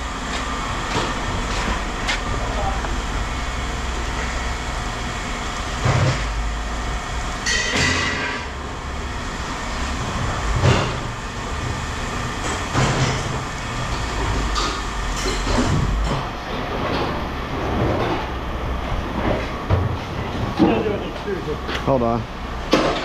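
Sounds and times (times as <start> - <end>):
heavy machinery rumble: 0.0 - 23.0
scrap metal clanking and scraping: 13.9 - 21.0.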